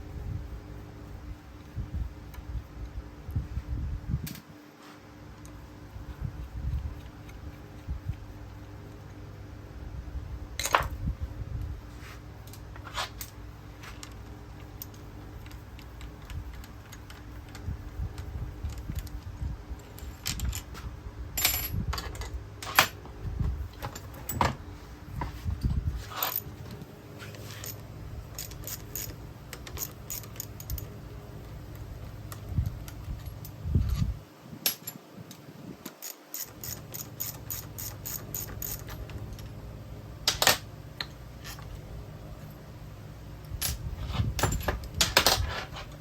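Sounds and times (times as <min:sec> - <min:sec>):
steady low hum: 0:00.0 - 0:46.0
metallic clinks of tools: 0:34.7 - 0:39.5.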